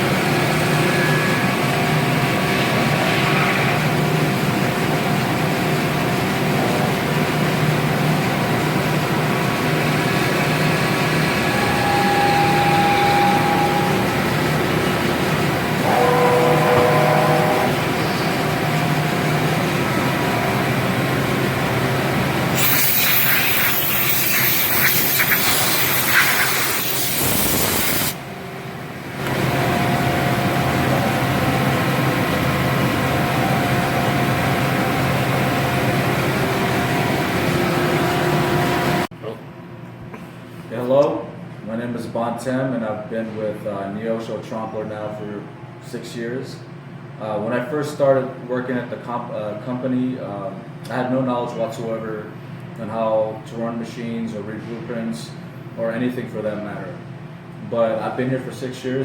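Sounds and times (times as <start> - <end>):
machinery humming: 0.0 - 39.1
brief higher machine tones: 11.3 - 18.5
loud hiss: 22.5 - 28.2.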